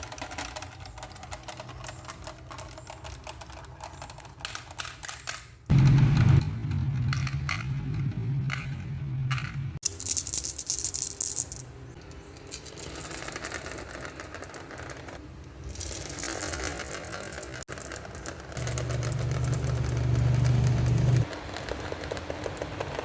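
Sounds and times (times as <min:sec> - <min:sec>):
marbles rattling down wooden run: 0:00.0 - 0:04.8, 0:09.4 - 0:23.0
low hum: 0:05.7 - 0:09.8, 0:18.6 - 0:21.2.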